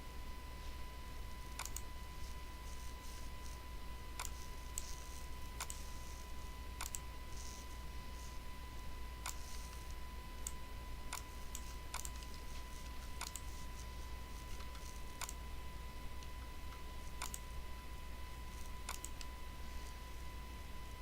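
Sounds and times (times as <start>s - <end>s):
faint high whine: 0.0s - 21.0s
low electrical hum: 0.0s - 21.0s
computer mouse clicking: 1.4s - 3.6s, 4.2s - 8.4s, 9.2s - 15.4s, 16.2s - 17.5s, 18.5s - 20.0s.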